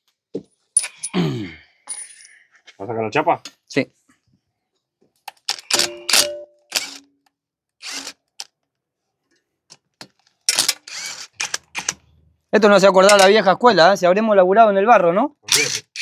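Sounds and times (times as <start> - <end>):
metal tools clinking and clanking: 0.8 - 1.1, 5.4 - 7.0, 13.0 - 13.4.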